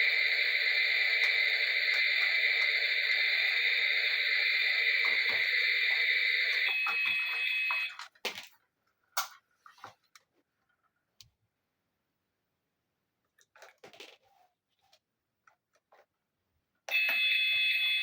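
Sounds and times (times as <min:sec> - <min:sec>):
steady hissing rush: 0:00.0 - 0:06.7.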